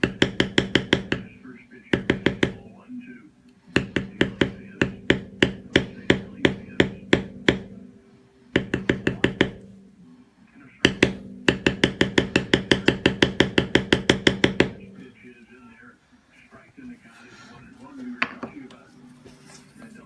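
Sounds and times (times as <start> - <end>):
mallet striking leather stamping tool: 0.0 - 1.3, 1.9 - 2.6, 3.8 - 7.7, 8.6 - 9.7, 10.8 - 14.9.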